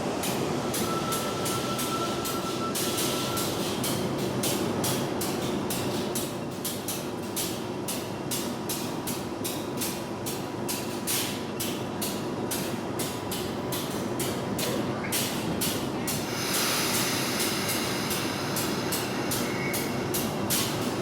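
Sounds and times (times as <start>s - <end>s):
subway train rumbling: 0.0s - 21.0s
rapid irregular clicks and rattles: 1.8s - 16.3s.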